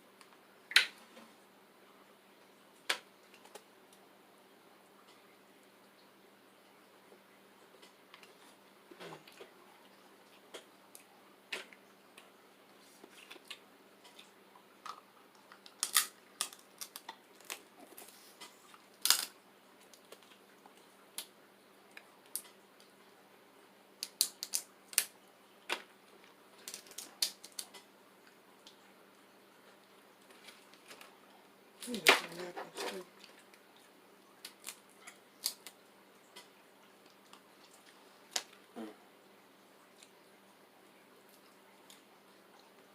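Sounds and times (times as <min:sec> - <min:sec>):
crab shells cracking: 0:14.9 - 0:17.7, 0:19.0 - 0:19.3, 0:24.0 - 0:25.1, 0:26.6 - 0:27.8, 0:34.4 - 0:34.8, 0:35.4 - 0:35.8.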